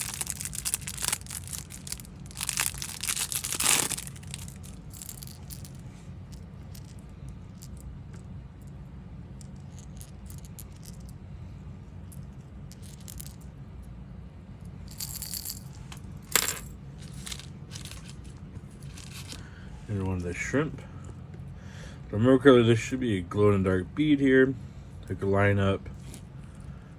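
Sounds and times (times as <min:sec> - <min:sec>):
clicks of lures and plastic packaging: 0:00.0 - 0:05.3
low steady hum: 0:00.0 - 0:26.9.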